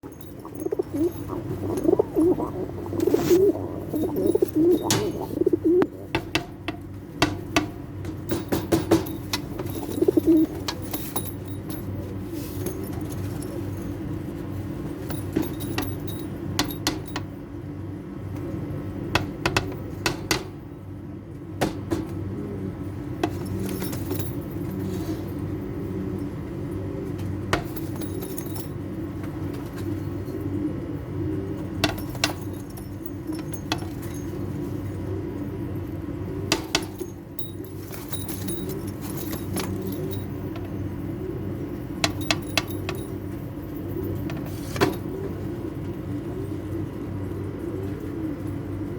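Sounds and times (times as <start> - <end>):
sharp clicks and clinks: 0.0 - 6.5, 42.0 - 43.4
pigeons cooing: 0.0 - 7.1, 9.4 - 11.0, 22.1 - 23.9, 24.6 - 37.4, 38.2 - 48.9.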